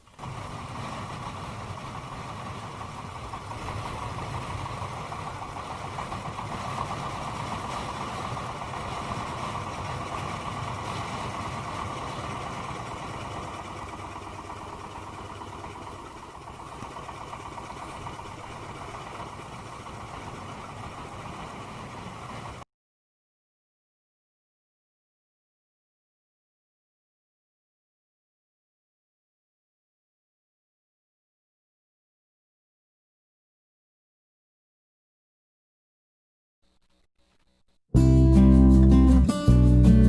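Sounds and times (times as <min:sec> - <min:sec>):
boat engine running: 0:00.0 - 0:22.6, 0:37.9 - 0:40.0.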